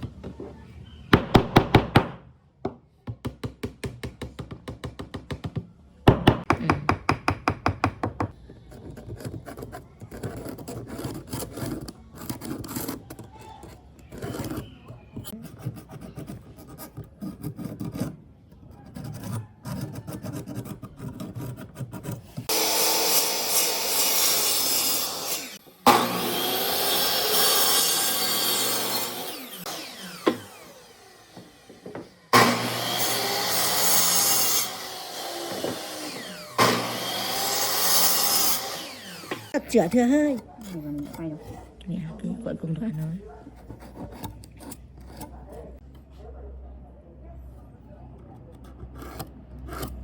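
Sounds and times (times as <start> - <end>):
knocks on wood: 1.2 - 8.3
power tool cutting wood: 22.4 - 39.6
scraping strokes on wood: 43.5 - 45.8.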